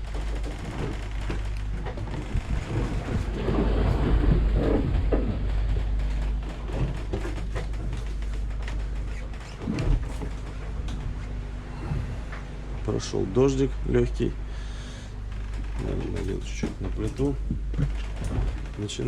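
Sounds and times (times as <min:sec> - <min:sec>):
knocks and clatters: 0:00.0 - 0:11.3, 0:15.3 - 0:19.0
generator humming: 0:00.0 - 0:19.0
wind buffeting microphone: 0:02.1 - 0:07.0.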